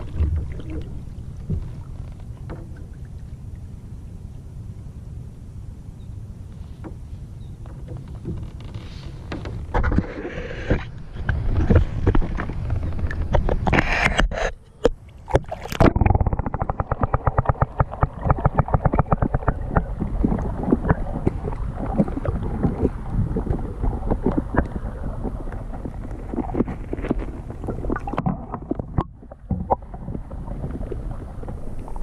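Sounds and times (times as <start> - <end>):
water slapping against boat hull: 14.8 - 31.8
wind buffeting microphone: 15.3 - 32.0.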